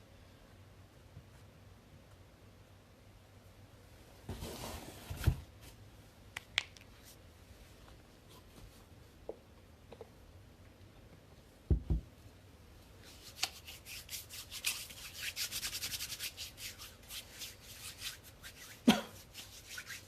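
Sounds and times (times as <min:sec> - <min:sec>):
hands rubbing together: 0:13.1 - 0:20.0.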